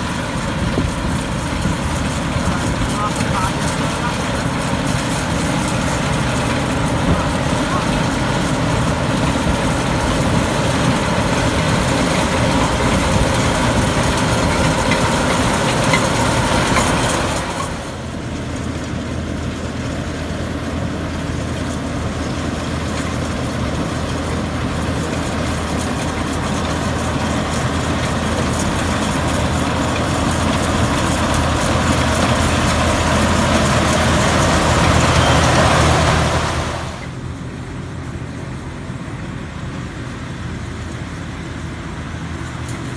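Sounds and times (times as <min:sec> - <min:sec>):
combine harvester engine running: 0:00.0 - 0:42.9.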